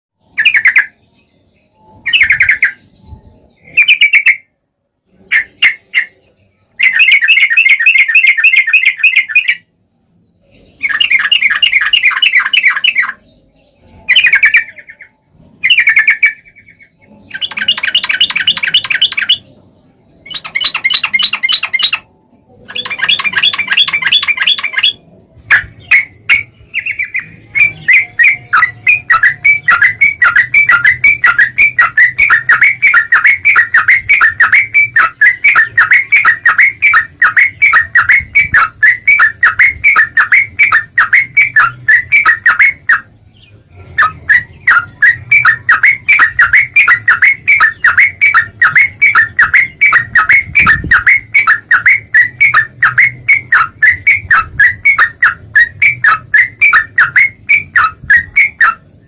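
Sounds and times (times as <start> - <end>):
bulbul chattering: 0.2 - 59.0.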